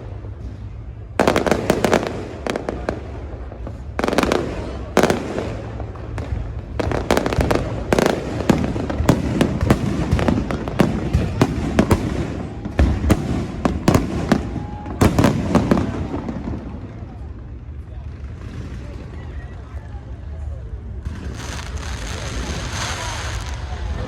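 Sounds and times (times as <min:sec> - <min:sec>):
fireworks bangs and crackles: 0:00.0 - 0:24.0.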